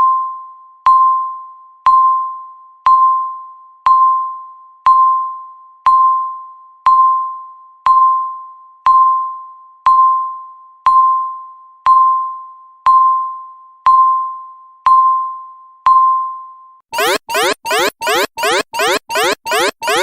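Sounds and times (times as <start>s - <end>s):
electronic timer beeps: 17.0s - 20.0s.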